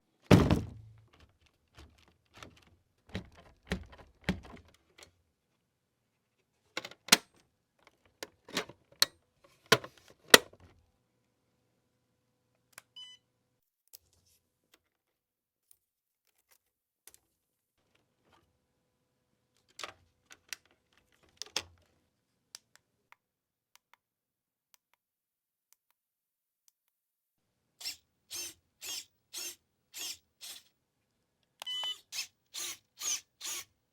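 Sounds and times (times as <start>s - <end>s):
short whirring bursts: 27.8s - 30.7s, 31.9s - 33.7s.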